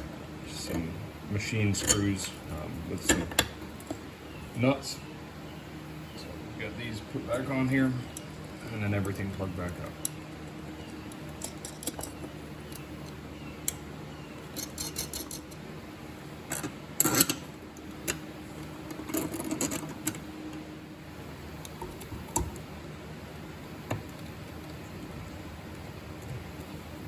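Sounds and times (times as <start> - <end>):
steady low hum: 0.0 - 27.0
hand tools clicking and clattering: 1.7 - 4.0, 10.8 - 13.8, 14.4 - 15.6, 16.5 - 18.2, 18.8 - 20.6.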